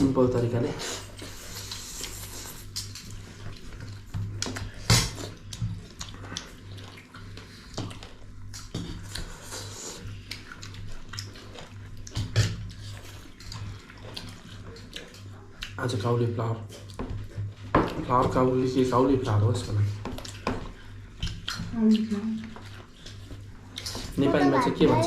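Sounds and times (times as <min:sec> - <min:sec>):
wet chewing and slurping: 0:00.8 - 0:16.0, 0:20.1 - 0:24.2.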